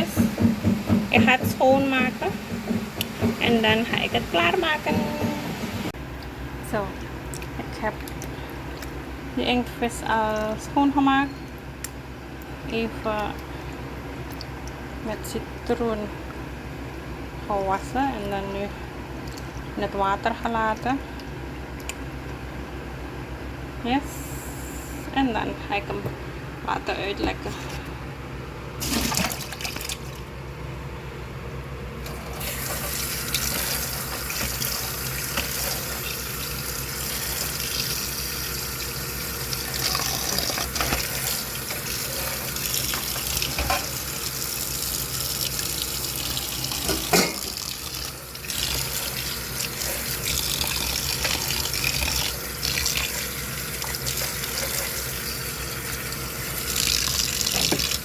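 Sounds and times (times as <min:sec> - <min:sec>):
tap running into a sink: 0:00.0 - 0:05.7, 0:32.4 - 0:38.1, 0:45.4 - 0:49.3, 0:56.6 - 0:58.0.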